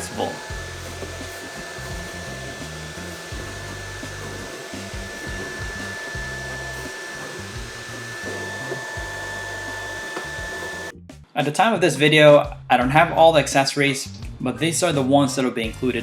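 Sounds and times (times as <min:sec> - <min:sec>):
stick vacuum whine: 0:00.0 - 0:10.9.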